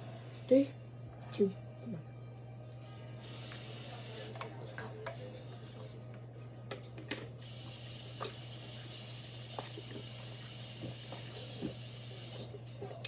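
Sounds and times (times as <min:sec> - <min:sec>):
gulping and swallowing: 0:09.6 - 0:12.5.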